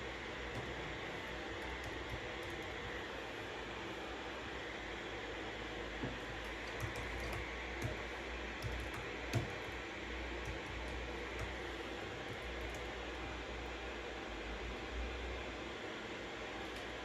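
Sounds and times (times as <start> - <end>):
keyboard keystrokes: 0.5 - 3.2, 6.2 - 9.8.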